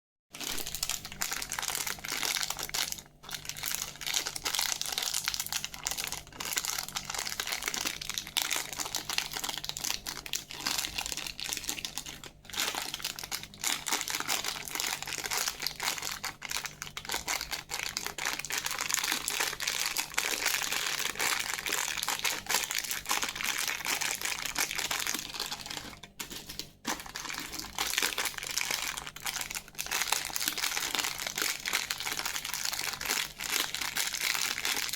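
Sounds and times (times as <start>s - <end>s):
plastic wrappers crinkling: 0.4s - 34.9s.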